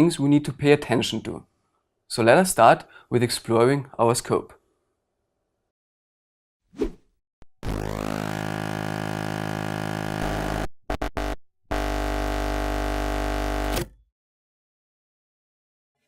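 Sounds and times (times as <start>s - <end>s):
synthesizer chords: 7.6s - 12.3s.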